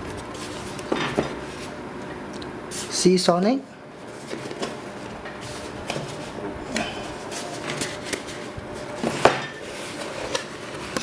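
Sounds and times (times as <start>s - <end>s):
cardboard packaging handled: 7.0s - 11.0s.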